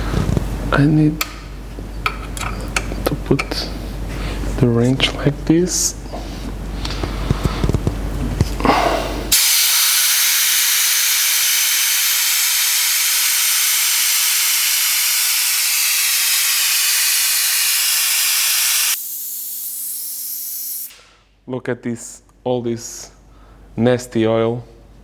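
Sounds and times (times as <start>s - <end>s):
pneumatic brake bleeder hissing: 9.3s - 21.1s.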